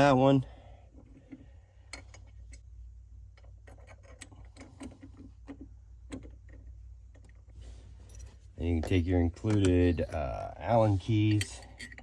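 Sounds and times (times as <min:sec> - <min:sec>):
small metal hardware clicking: 0:08.1 - 0:10.2, 0:11.2 - 0:12.0.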